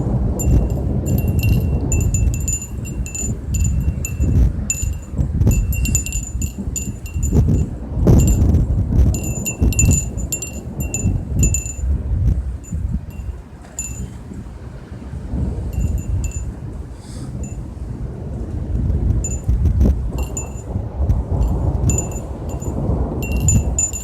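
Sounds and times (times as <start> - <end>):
wind chimes ringing: 0.0 - 8.6, 9.2 - 12.0, 12.6 - 14.2, 15.7 - 16.6, 17.4 - 17.6, 19.2 - 19.5, 20.2 - 20.7, 21.4 - 24.0
low fluctuating rumble: 0.0 - 14.0, 17.4 - 24.0.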